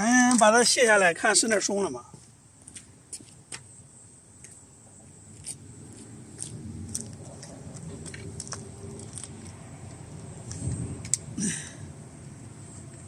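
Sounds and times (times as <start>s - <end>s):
low rumble: 5.7s - 13.0s.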